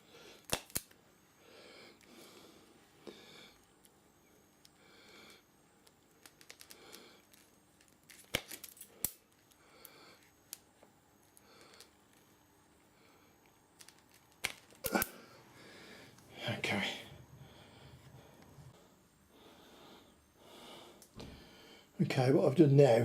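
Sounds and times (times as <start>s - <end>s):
wire stripper clicking and snipping: 0.4s - 1.0s.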